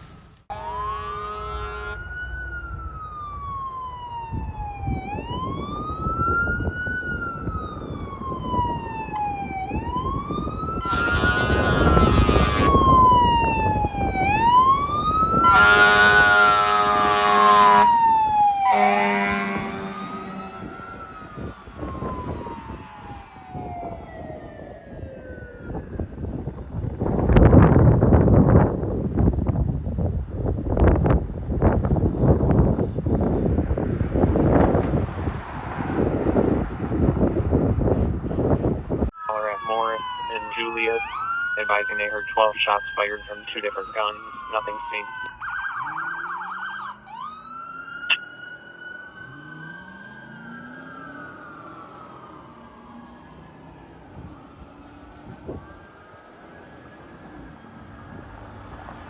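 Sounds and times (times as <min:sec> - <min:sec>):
air horn blasts: 0:00.5 - 0:02.1, 0:10.8 - 0:12.8, 0:15.4 - 0:18.0, 0:18.6 - 0:21.2
fire engine siren wailing: 0:00.5 - 0:59.0
truck rumble: 0:14.9 - 0:22.0.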